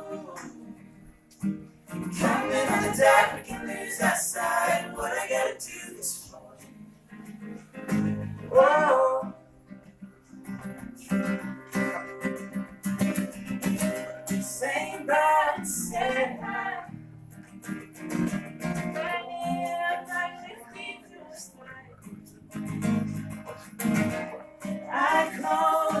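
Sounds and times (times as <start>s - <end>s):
person singing: 0.0s - 0.8s, 2.1s - 6.2s, 8.3s - 9.4s, 14.3s - 17.0s, 18.9s - 22.1s, 24.8s - 26.0s
acoustic guitar strumming: 0.0s - 26.0s.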